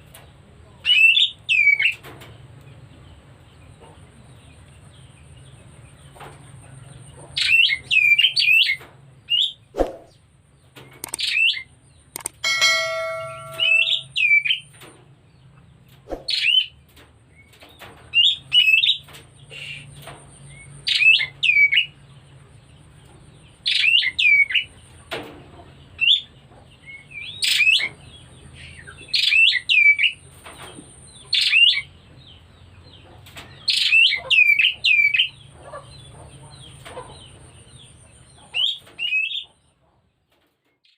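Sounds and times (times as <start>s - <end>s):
bird calling sharp notes: 12.2s - 14.6s.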